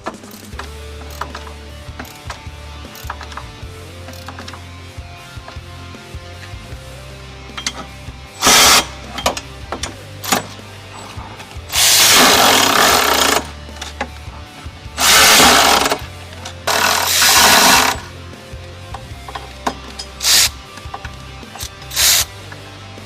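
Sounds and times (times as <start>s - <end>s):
ratchet clicks: 0.0s - 4.7s, 7.5s - 14.1s, 15.0s - 18.1s, 18.9s - 22.6s
background music with low beat: 0.0s - 23.0s
electric ratchet running: 7.6s - 9.6s, 10.2s - 14.1s, 15.0s - 18.2s, 19.2s - 22.4s.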